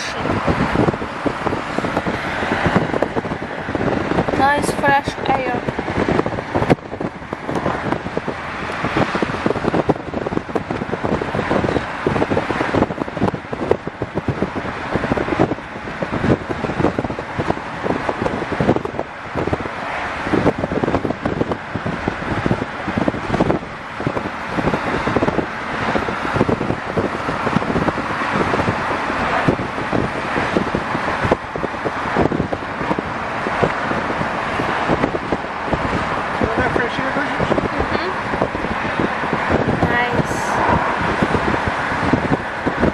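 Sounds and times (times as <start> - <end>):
wind buffeting microphone: 0.0 - 42.9.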